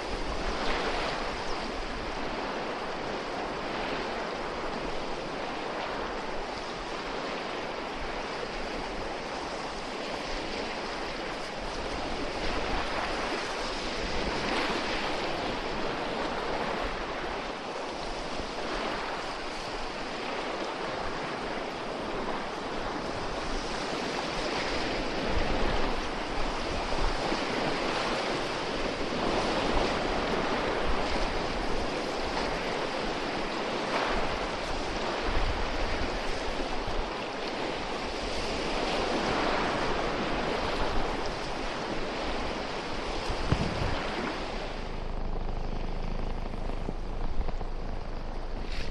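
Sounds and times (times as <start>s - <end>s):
wind buffeting microphone: 0.0s - 48.9s
water rushing: 39.8s - 48.9s.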